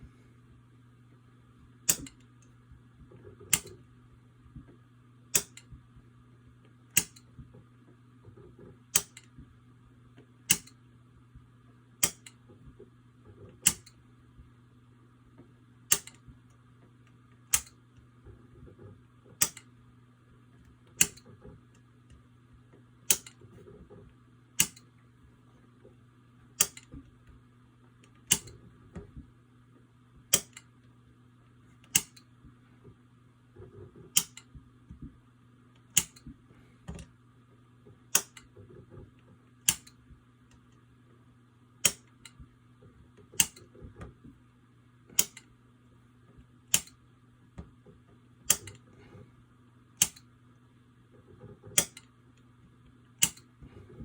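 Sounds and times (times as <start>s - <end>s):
toggle switch clicking: 5.3s - 5.7s, 15.9s - 16.2s, 19.4s - 19.6s, 24.6s - 24.9s, 26.6s - 26.9s, 28.3s - 28.6s, 31.9s - 32.2s, 38.1s - 38.5s, 41.8s - 42.4s, 43.4s - 43.6s, 45.2s - 45.5s, 46.7s - 47.0s, 48.5s - 48.8s, 50.0s - 50.3s, 53.2s - 53.5s.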